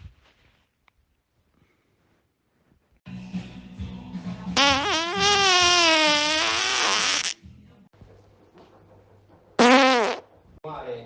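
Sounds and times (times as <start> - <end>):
long buzzing fart: 4.6 - 7.4, 9.6 - 10.3.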